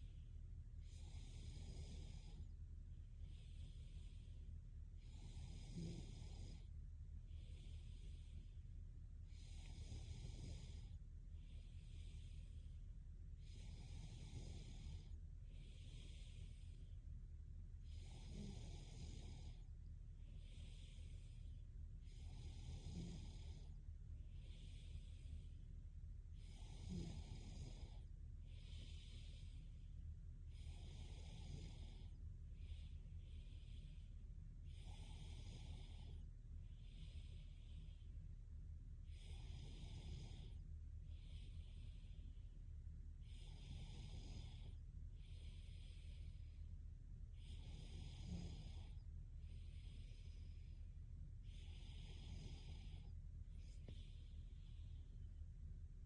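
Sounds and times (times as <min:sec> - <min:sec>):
girl breathing while asleep: 0:00.0 - 0:56.0
light snoring: 0:00.0 - 0:56.0
low hum: 0:48.7 - 0:56.0.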